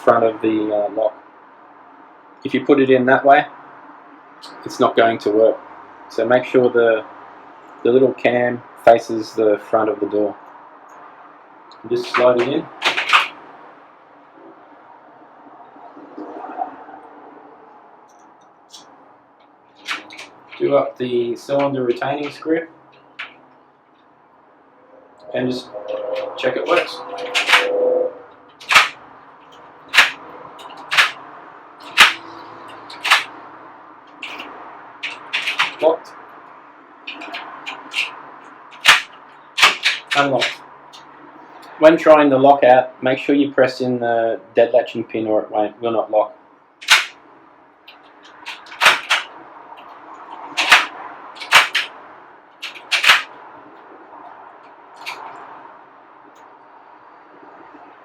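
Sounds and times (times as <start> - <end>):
door lock clacking: 12.0 - 13.4, 19.8 - 20.8, 23.0 - 23.4, 26.1 - 27.8, 28.5 - 33.4, 34.1 - 36.0, 37.1 - 41.1, 46.8 - 47.2, 47.9 - 52.0, 52.6 - 53.4, 55.0 - 55.4.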